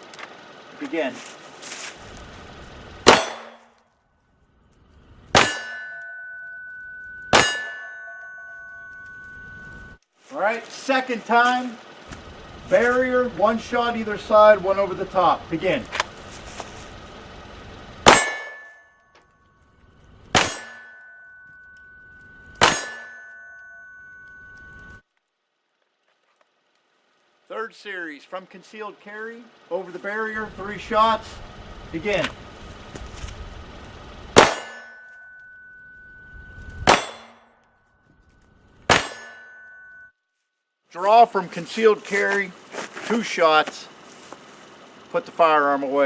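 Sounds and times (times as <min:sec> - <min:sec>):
pistol shots: 0:03.0 - 0:03.6
metallic ringing: 0:03.0 - 0:03.8, 0:04.8 - 0:10.0, 0:18.0 - 0:25.0, 0:33.6 - 0:40.2.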